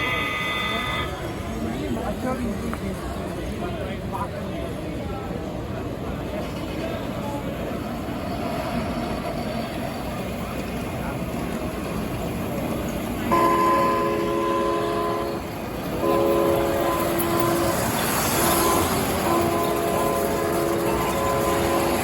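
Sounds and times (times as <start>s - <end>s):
model train horn blasts: 0.0s - 1.3s, 13.3s - 22.0s.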